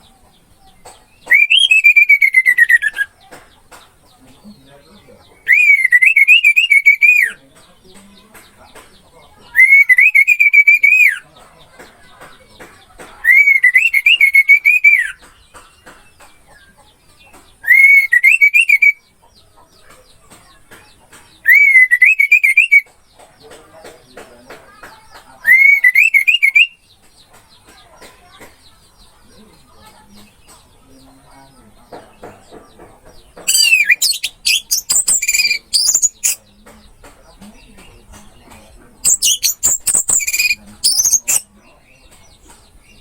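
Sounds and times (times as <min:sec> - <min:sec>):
warbling whistled song: 0:01.3 - 0:03.1, 0:05.4 - 0:07.4, 0:09.6 - 0:11.2, 0:13.3 - 0:15.2, 0:17.6 - 0:19.1, 0:21.4 - 0:22.9, 0:25.5 - 0:26.8, 0:33.5 - 0:36.4, 0:39.0 - 0:41.5
faint chirps and clicks: 0:09.9 - 0:43.0.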